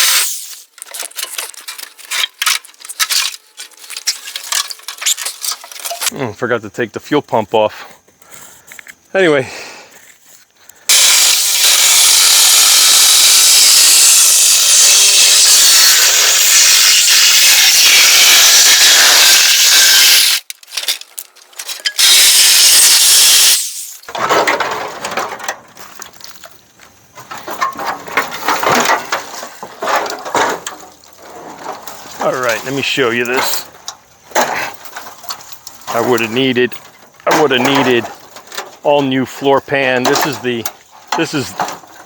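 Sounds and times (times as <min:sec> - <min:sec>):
power tool cutting sheet metal: 0:00.0 - 0:00.6, 0:10.9 - 0:20.4, 0:22.0 - 0:24.0.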